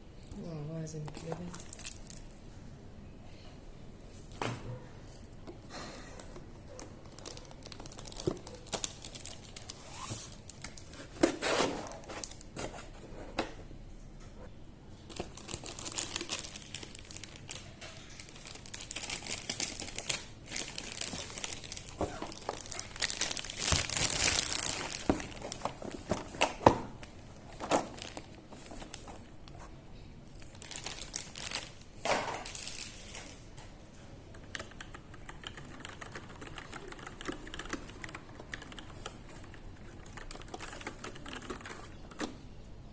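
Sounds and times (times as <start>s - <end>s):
packaging crinkling: 1.1s - 2.3s, 6.3s - 12.6s, 15.1s - 29.7s, 30.3s - 33.5s
packaging tearing: 7.0s - 12.5s, 15.1s - 26.6s.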